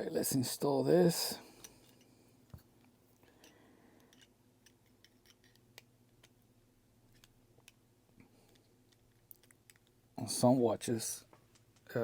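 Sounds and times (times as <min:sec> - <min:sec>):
small clicks of watch parts: 0:02.8 - 0:06.4.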